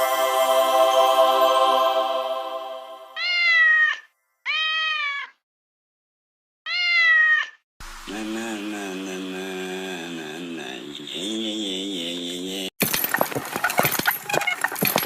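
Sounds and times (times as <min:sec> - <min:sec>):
held musical chord: 0:00.0 - 0:03.2
low droning chant: 0:00.0 - 0:03.2, 0:08.0 - 0:12.7
cat meowing: 0:03.2 - 0:05.4, 0:06.7 - 0:07.6.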